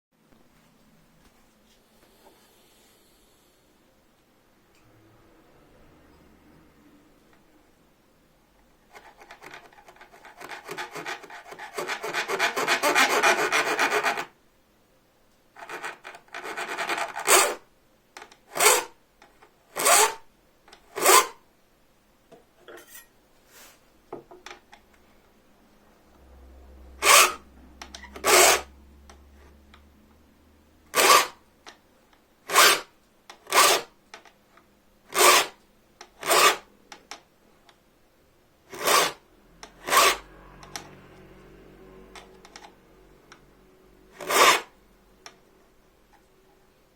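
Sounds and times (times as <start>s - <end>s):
hand file cutting saw teeth: 8.9s - 14.3s, 15.6s - 17.6s, 18.5s - 18.9s, 19.8s - 20.2s, 20.9s - 21.4s, 27.0s - 28.7s, 30.9s - 31.4s, 32.5s - 33.9s, 35.1s - 35.6s, 36.2s - 36.7s, 38.7s - 40.3s, 44.1s - 44.8s.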